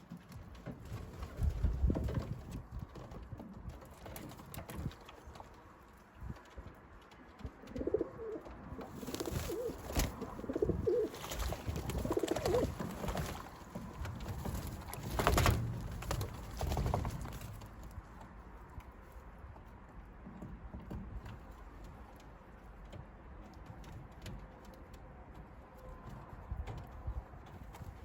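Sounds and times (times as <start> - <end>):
pigeons cooing: 7.7 - 15.0.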